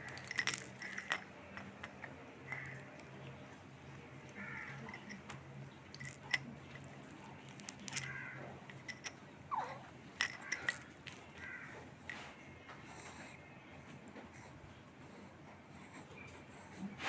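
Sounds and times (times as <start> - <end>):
baby squeaking: 9.5 - 9.8.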